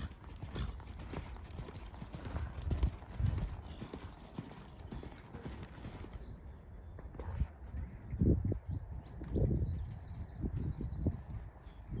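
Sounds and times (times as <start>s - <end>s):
insect chirring: 0.0s - 7.0s
horse hooves on soft ground: 0.0s - 12.0s.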